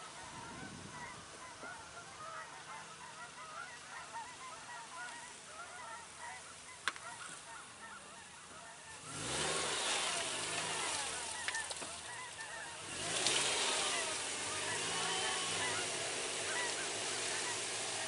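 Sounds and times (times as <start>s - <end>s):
chorus of bird calls: 0.0s - 18.0s.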